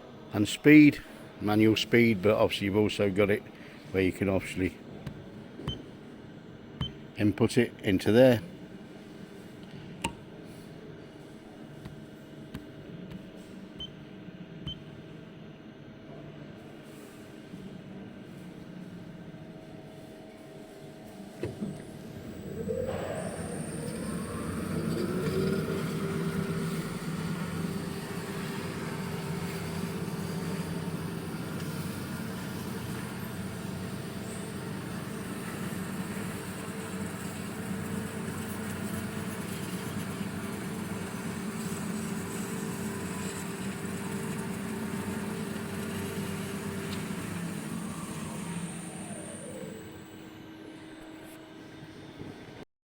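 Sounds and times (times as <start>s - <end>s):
bandsaw motor whine: 21.7s - 51.3s.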